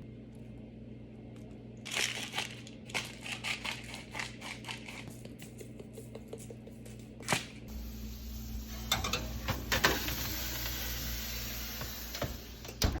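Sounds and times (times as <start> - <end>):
steady low hum: 5.2 - 13.0.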